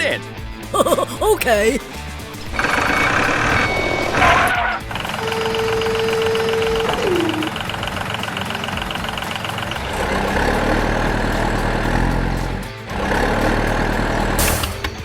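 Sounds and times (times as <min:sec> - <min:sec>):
fast high ticking: 0:00.0 - 0:14.9
deep engine rumble: 0:01.9 - 0:15.0
steady tone dropping in pitch: 0:02.5 - 0:11.9.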